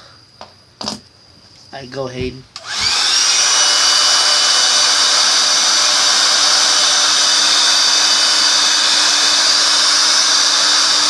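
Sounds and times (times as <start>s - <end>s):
small electric motor whining: 2.6s - 11.0s.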